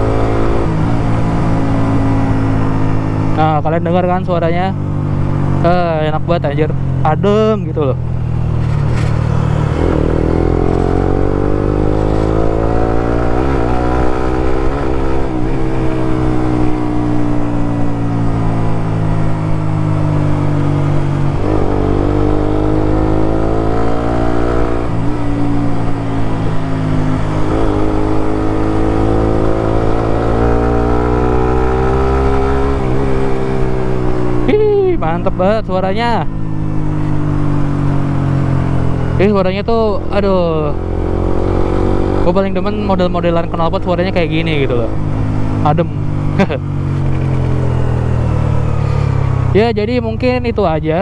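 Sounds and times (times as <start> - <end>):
motorcycle engine revving: 0.0 - 51.0.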